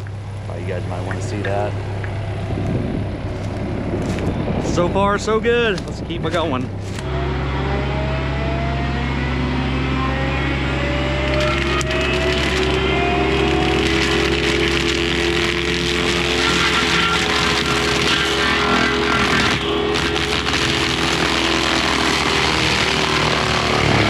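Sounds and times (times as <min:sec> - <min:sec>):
excavator engine drone: 0:00.0 - 0:24.0
mulcher drum whine: 0:00.0 - 0:24.0
brush shredding: 0:03.2 - 0:07.1, 0:11.2 - 0:24.0.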